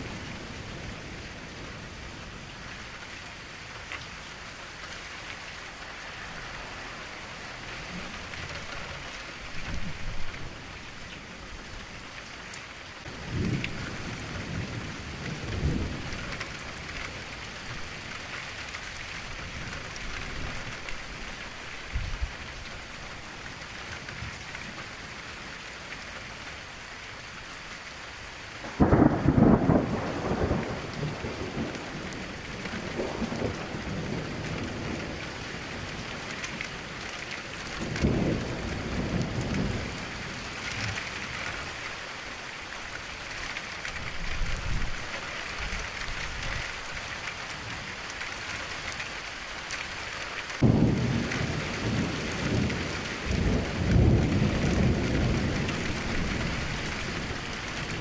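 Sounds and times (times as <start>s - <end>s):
steady rain falling: 0.0s - 58.0s
thunder clap and rumble: 13.0s - 21.1s, 28.6s - 41.8s, 50.6s - 58.0s.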